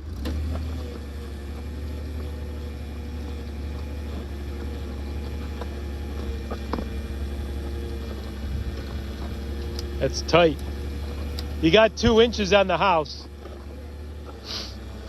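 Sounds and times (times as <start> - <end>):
auger rig engine droning: 0.0 - 15.0.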